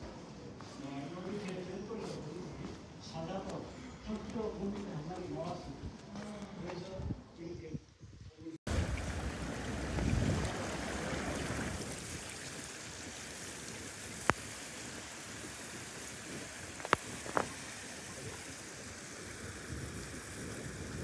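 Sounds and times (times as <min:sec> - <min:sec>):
wind: 0:00.0 - 0:21.0
rushing water: 0:08.7 - 0:21.0.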